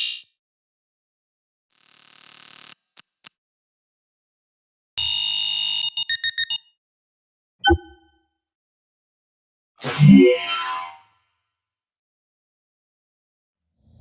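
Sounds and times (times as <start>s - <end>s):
high electronic tone: 7.6s - 8.1s
quick electronic beeps: 7.6s - 8.1s
short electronic blips: 7.6s - 8.1s.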